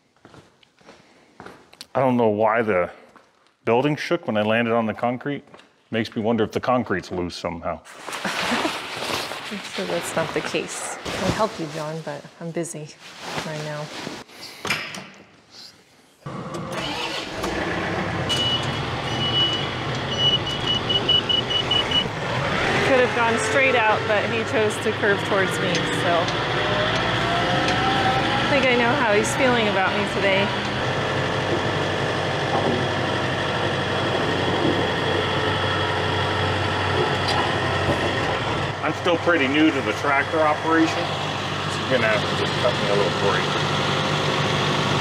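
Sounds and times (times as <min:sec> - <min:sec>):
tractor engine running: 0:16.3 - 0:45.0.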